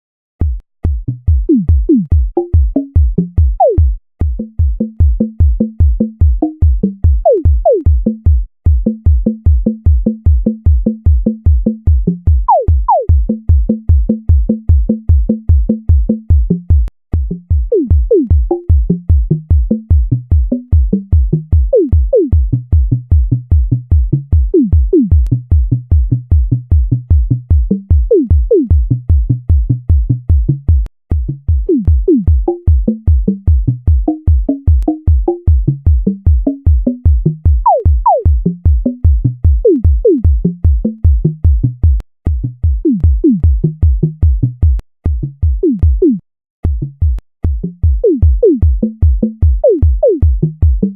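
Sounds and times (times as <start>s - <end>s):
short electronic blips: 12.5s - 13.1s, 37.6s - 38.3s.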